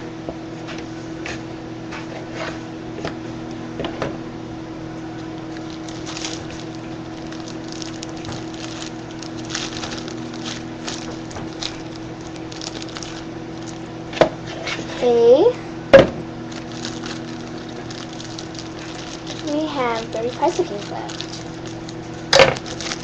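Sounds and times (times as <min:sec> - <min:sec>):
microwave oven humming: 0:00.0 - 0:23.0
plastic bag crinkling: 0:05.4 - 0:14.0, 0:16.4 - 0:23.0.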